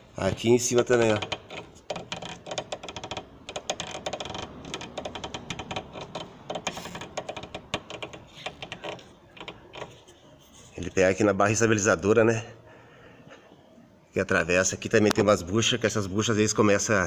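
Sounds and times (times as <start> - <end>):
suspension link creaking and clicking: 0.0 - 10.2.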